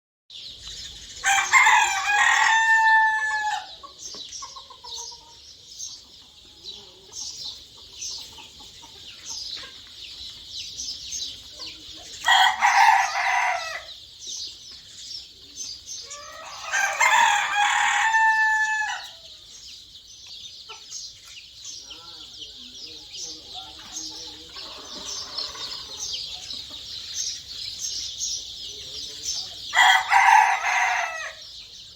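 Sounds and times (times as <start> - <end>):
birds chirping: 0.3 - 31.9
rooster crowing: 1.2 - 3.8, 12.2 - 13.9, 16.1 - 19.2, 29.7 - 31.4.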